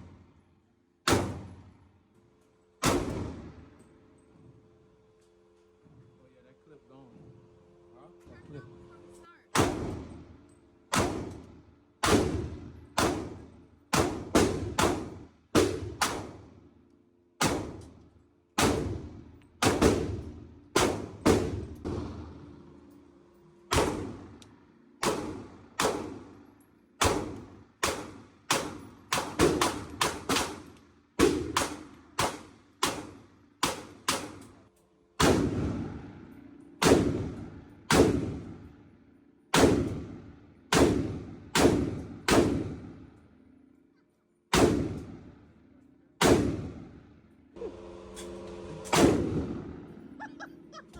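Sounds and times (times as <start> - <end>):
gunshots with ringing echo: 10.9 - 16.5, 18.6 - 22.6, 23.7 - 24.4, 25.0 - 26.4, 27.0 - 34.4, 35.2 - 38.7, 39.5 - 43.0, 44.5 - 45.4, 46.2 - 47.0, 48.9 - 50.1.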